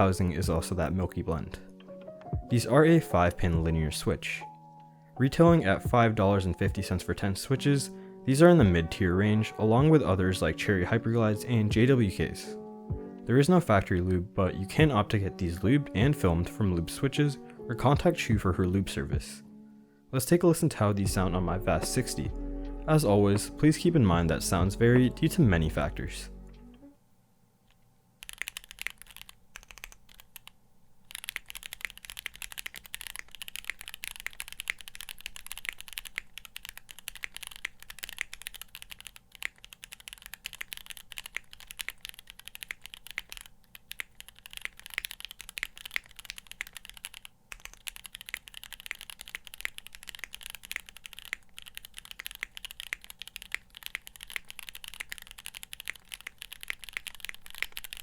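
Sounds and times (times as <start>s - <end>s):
mechanical keyboard typing: 28.2s - 58.0s.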